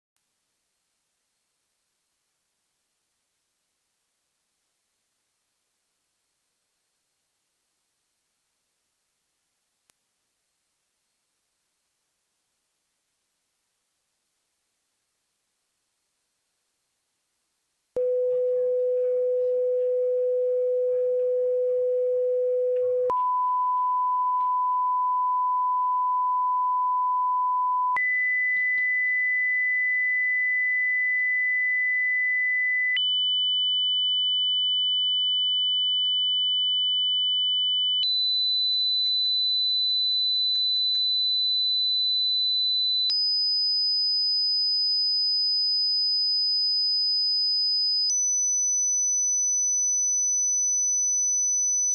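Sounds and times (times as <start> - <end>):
pure sine tone stepping up: 18.0 - 28.0.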